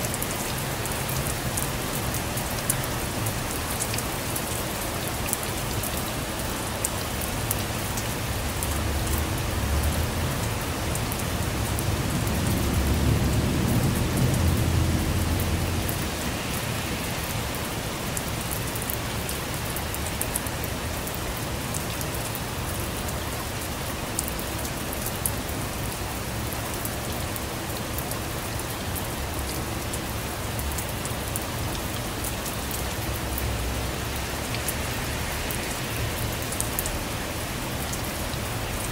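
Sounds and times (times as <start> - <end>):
steady rain falling: 0.0 - 38.9
low rumble of thunder: 8.7 - 17.3.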